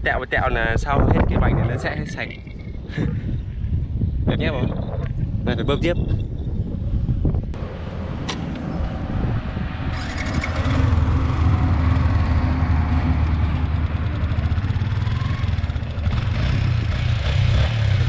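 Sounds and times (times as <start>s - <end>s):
wind on microphone: 0.0s - 18.0s
motorbike engine running: 9.9s - 18.0s.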